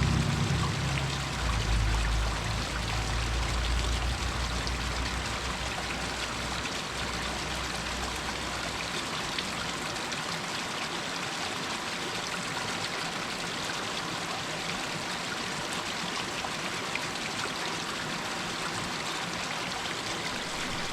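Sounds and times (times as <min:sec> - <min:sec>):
low rumble: 0:00.0 - 0:08.8
water rushing over rocks: 0:00.0 - 0:20.9.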